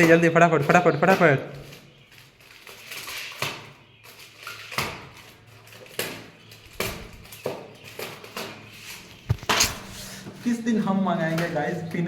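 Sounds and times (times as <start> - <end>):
packaging rustling and tearing: 1.7 - 10.4.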